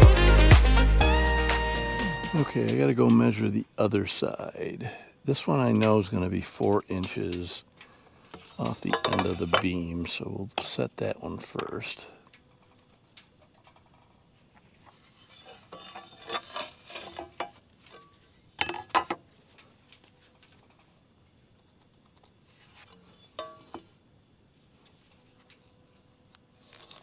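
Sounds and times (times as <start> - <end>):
insects chirring: 1.6 - 27.0
light clinks and knocks: 7.8 - 9.7.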